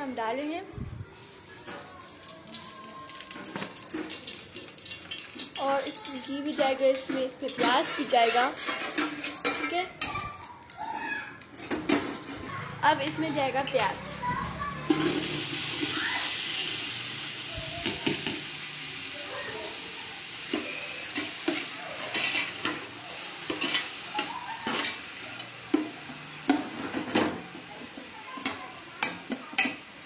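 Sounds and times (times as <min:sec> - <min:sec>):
onions sizzling in fat: 0:01.1 - 0:30.0
spoon scraping pot: 0:07.0 - 0:10.3, 0:20.5 - 0:22.8, 0:23.5 - 0:25.9.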